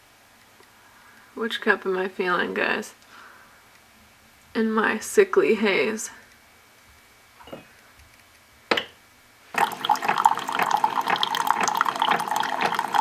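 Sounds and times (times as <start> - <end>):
tap water splashing into vessel: 9.6 - 13.0.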